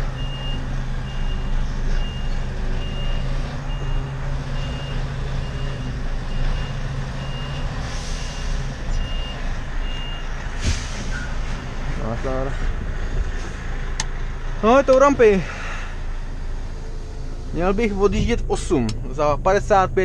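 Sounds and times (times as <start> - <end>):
truck reversing alarm beeps: 0.0 - 10.5
diesel engine running low: 0.0 - 20.0.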